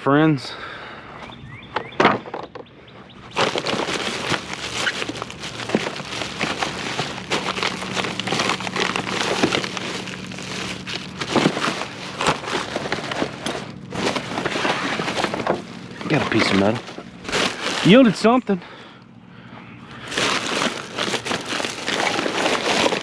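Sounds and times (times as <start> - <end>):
rummaging rustling and crinkling: 3.3 - 18.5, 20.0 - 23.0.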